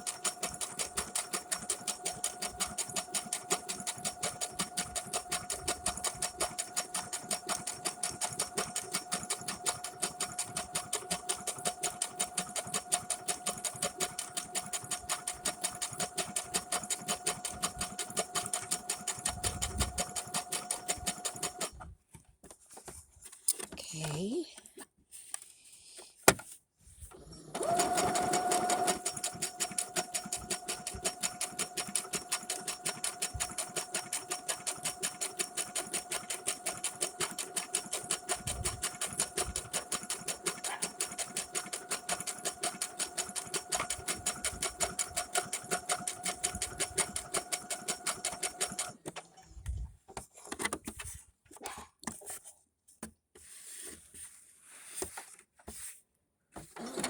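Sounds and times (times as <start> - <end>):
sewing machine stitching: 0.0 - 21.8, 27.1 - 49.4, 56.6 - 57.0.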